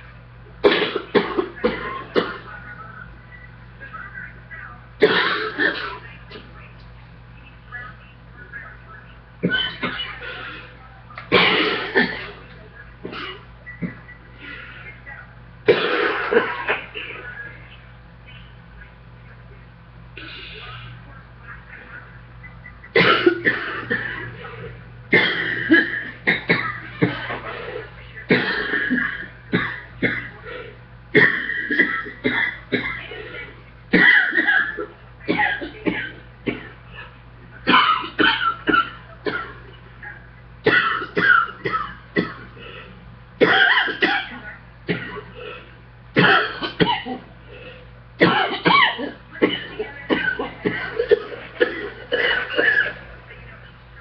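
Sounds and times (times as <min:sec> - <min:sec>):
woman coughing: 0:00.6 - 0:02.7, 0:05.0 - 0:06.4, 0:09.4 - 0:10.7, 0:11.3 - 0:15.0, 0:15.6 - 0:17.4, 0:22.9 - 0:53.2.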